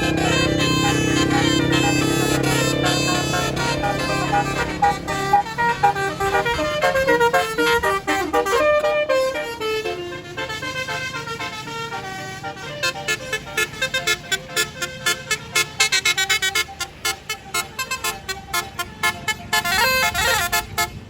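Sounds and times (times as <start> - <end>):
rhythmic pulsing beat: 0.0 - 9.6
multi-trumpet bus horn playing a tune: 0.0 - 21.0.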